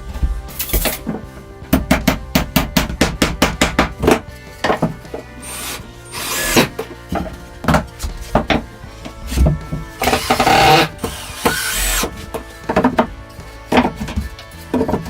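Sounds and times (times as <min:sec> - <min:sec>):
background music: 0:00.0 - 0:15.0
hand tool knocking on wood: 0:01.1 - 0:05.3, 0:06.6 - 0:13.1, 0:13.7 - 0:15.0.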